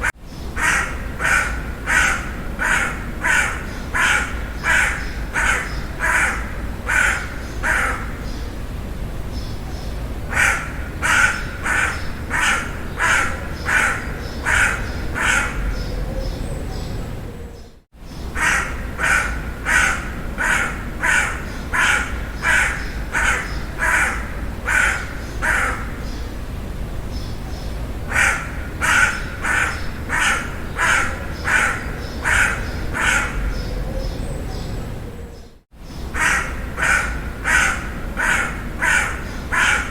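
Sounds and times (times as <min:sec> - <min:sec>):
crow cawing: 0:00.1 - 0:08.3, 0:10.3 - 0:15.8, 0:18.3 - 0:26.1, 0:28.1 - 0:33.7, 0:36.1 - 0:39.9.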